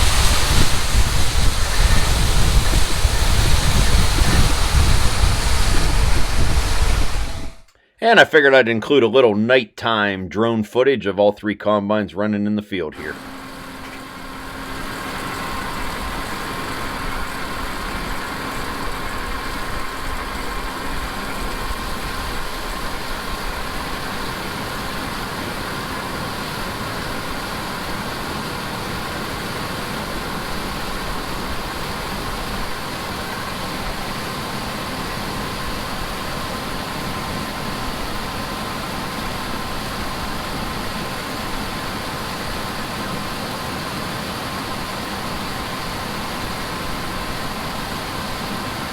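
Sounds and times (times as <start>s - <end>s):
engine running steadily: 0.0s - 7.7s, 13.1s - 48.9s
thin steady whine: 0.0s - 7.7s, 13.0s - 29.4s.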